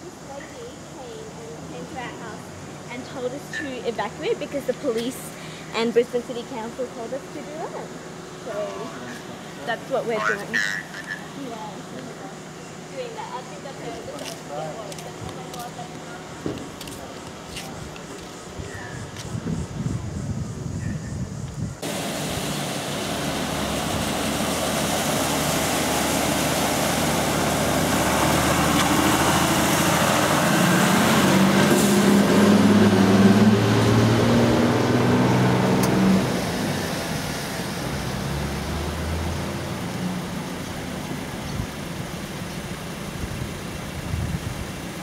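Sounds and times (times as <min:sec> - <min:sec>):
vehicle engine running: 0:21.8 - 0:45.0.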